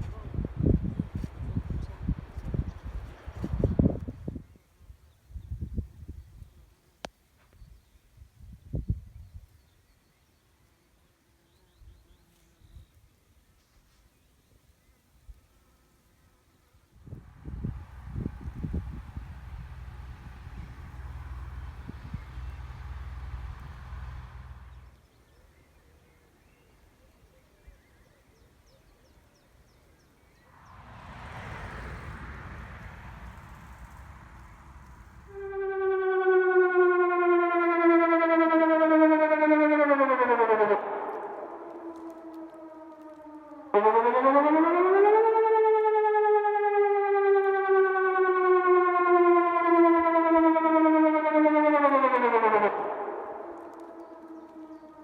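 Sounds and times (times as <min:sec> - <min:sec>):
wind rumbling on microphone: 0:00.0 - 0:06.7, 0:07.6 - 0:09.8, 0:16.9 - 0:25.0, 0:30.4 - 0:36.3
rushing noise: 0:17.0 - 0:24.9, 0:30.4 - 0:36.2
siren winding down: 0:17.1 - 0:25.0, 0:30.5 - 0:55.0.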